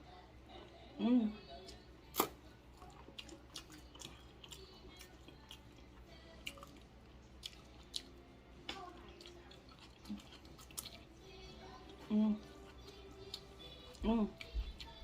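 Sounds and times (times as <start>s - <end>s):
close-up chewing of food: 2.1s - 15.0s.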